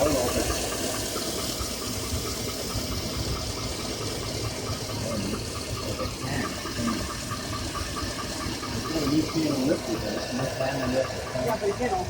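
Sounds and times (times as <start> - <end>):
engine idling: 0.0 - 12.0
rapid engine ticking: 0.0 - 12.0.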